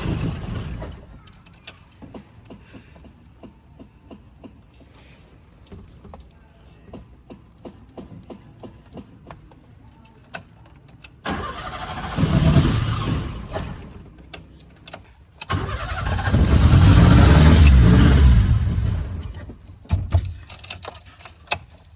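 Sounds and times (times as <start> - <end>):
car engine catching and revving: 11.3 - 13.9, 15.5 - 19.4.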